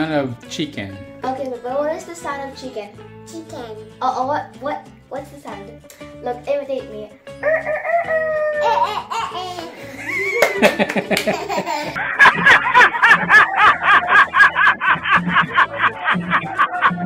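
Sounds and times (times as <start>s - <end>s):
background music: 0.0s - 17.0s
child laughing: 7.4s - 17.0s.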